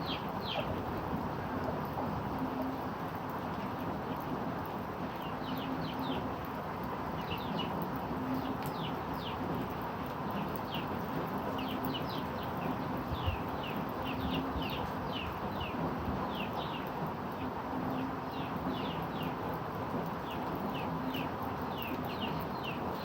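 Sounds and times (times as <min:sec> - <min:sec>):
small birds chirping: 0:00.0 - 0:00.7, 0:11.6 - 0:19.4, 0:20.2 - 0:23.0
rain falling: 0:00.0 - 0:23.0.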